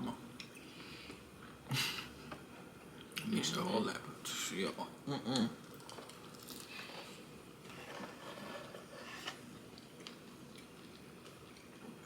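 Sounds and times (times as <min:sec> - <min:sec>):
quiet chewing: 0:09.5 - 0:12.0.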